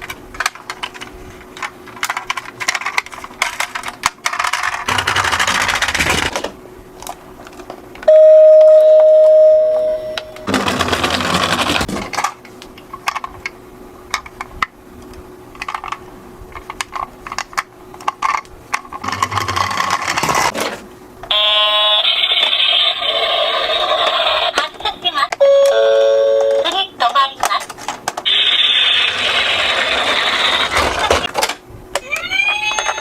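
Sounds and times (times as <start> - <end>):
plastic toy cars rattling: 0.0 - 6.5, 10.5 - 12.4, 16.6 - 20.7
steady electronic beep: 8.1 - 10.5.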